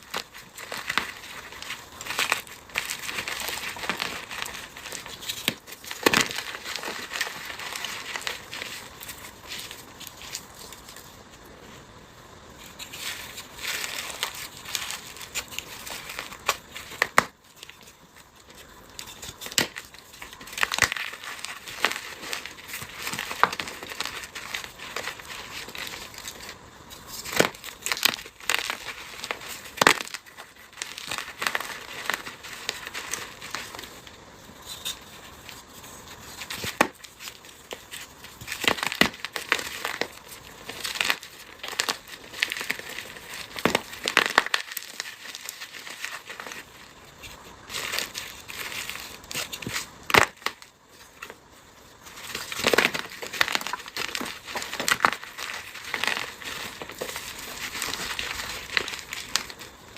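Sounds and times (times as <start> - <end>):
dry material crunching by hand: 0.0 - 11.5, 12.6 - 59.9.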